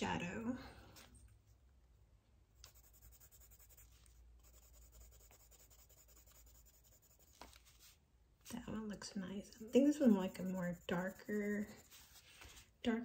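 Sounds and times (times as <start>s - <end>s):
pencil scratching on paper: 2.6s - 7.9s, 9.5s - 12.7s.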